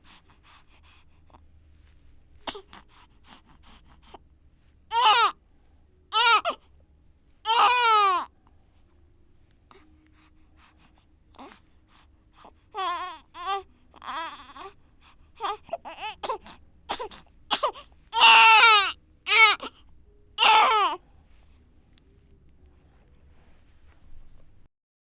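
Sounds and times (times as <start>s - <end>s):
baby crying: 4.9s - 5.3s, 6.1s - 6.6s, 7.5s - 8.3s, 12.8s - 14.7s, 15.4s - 19.7s, 20.4s - 21.0s.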